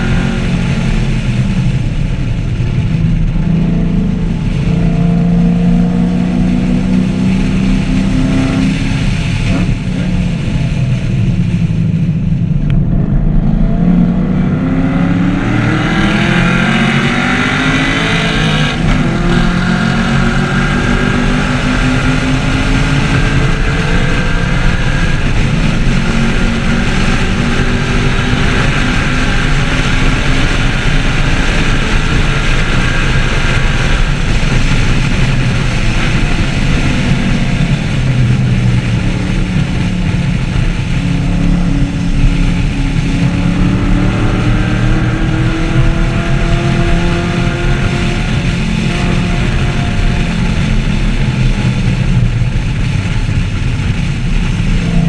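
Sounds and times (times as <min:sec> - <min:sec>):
car engine revving: 0:00.0 - 0:55.0.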